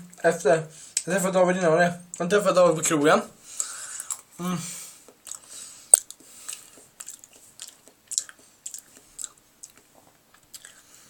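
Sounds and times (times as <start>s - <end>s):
person chewing food: 3.6s - 4.4s, 5.0s - 11.0s.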